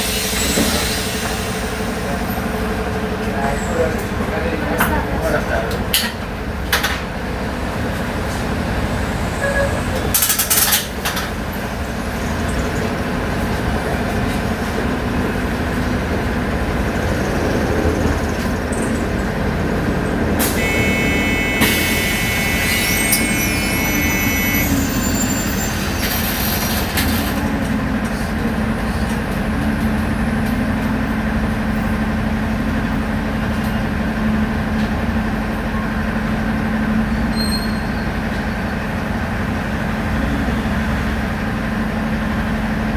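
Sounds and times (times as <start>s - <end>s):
bus engine running: 0.0s - 42.9s
steady electronic tone: 20.4s - 26.3s
pneumatic air hiss: 20.4s - 27.1s.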